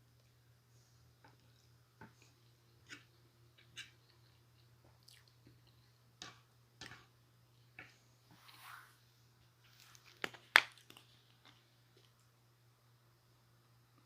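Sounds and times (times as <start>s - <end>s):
low electrical hum: 0.0s - 14.0s
chewing noodles: 2.2s - 5.9s.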